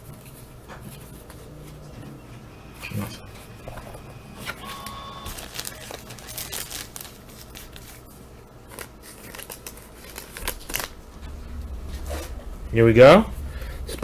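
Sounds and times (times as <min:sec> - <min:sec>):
wax paper wrapper crinkling and tearing: 0:05.3 - 0:11.0.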